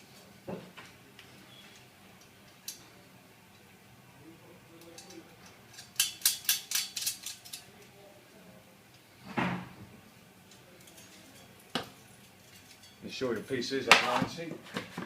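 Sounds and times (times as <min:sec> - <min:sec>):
metal clicking and clinking: 0:04.8 - 0:07.9.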